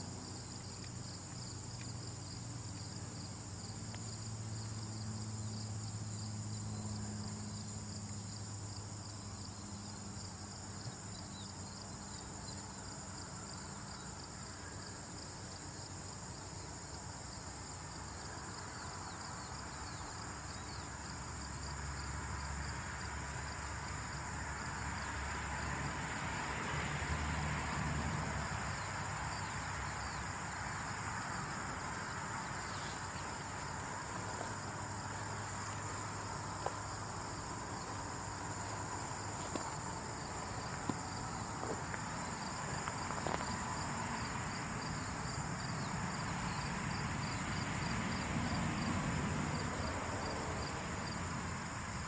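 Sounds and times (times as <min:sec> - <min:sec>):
high-pitched insect trill: 0:28.1 - 0:48.2.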